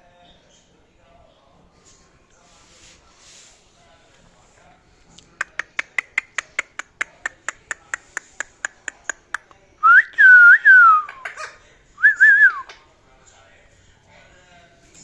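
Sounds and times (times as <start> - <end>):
parakeet clicking: 5.2 - 9.5.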